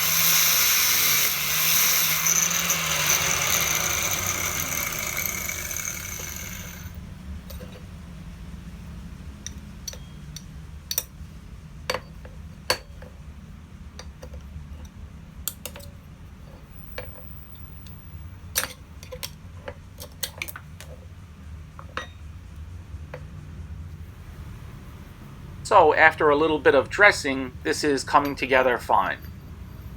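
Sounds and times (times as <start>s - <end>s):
light metallic clinks and taps: 9.4s - 11.1s, 21.8s - 22.2s.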